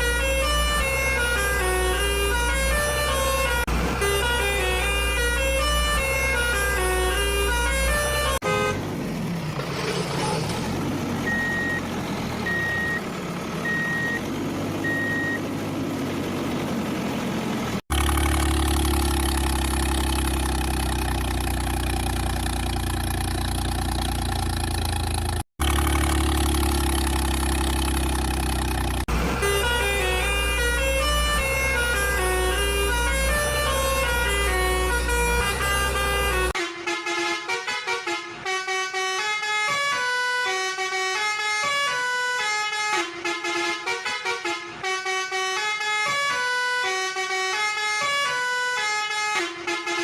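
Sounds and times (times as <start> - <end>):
truck engine revving: 0.0 - 36.6
single-tone beeps: 11.3 - 11.8, 12.5 - 13.0, 14.8 - 15.4.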